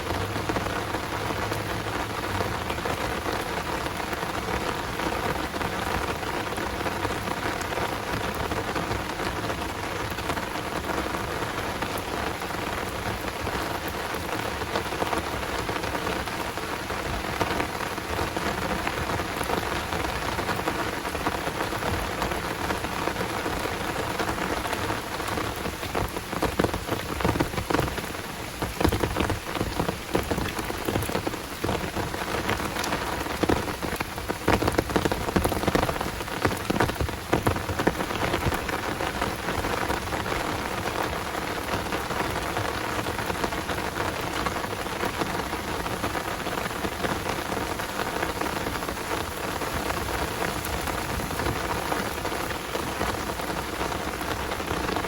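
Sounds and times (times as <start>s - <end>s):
close raindrops striking: 0.0s - 55.0s
heavy rain falling: 0.0s - 55.0s.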